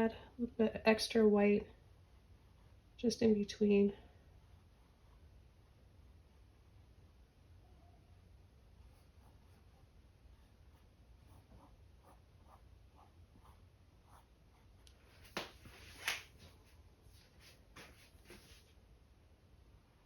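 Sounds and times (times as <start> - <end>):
paintbrush strokes on canvas: 8.8 - 18.8.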